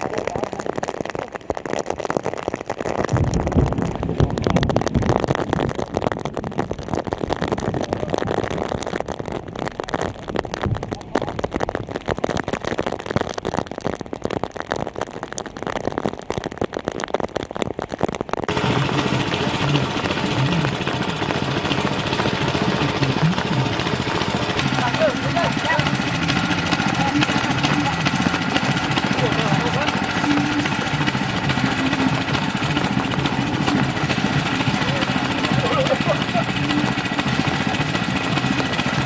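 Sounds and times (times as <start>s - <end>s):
crackling and spattering: 0.0s - 39.0s
small water-pump engine running: 18.5s - 39.0s.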